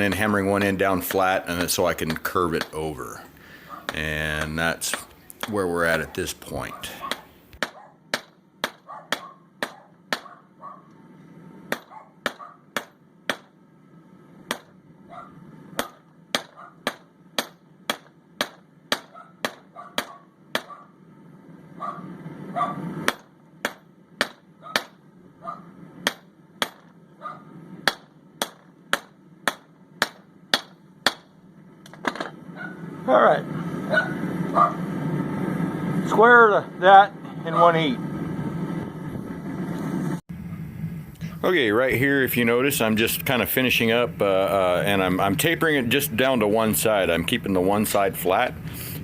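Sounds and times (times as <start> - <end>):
hammer striking steel on anvil: 0.0 - 2.9, 3.8 - 6.2, 6.9 - 10.4, 11.7 - 13.6, 14.4 - 14.8, 15.7 - 20.8, 23.0 - 25.1, 25.9 - 27.1, 27.8 - 32.5.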